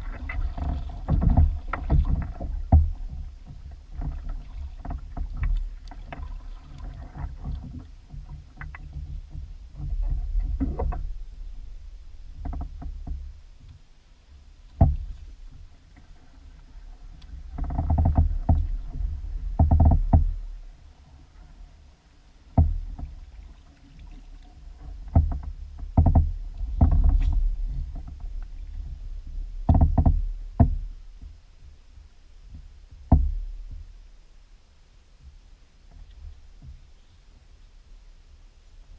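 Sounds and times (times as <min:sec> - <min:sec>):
kayak hull knocking and clunking: 0:00.0 - 0:21.8, 0:22.4 - 0:34.1, 0:35.2 - 0:37.2
steady low rumble: 0:00.0 - 0:23.6, 0:24.2 - 0:38.9.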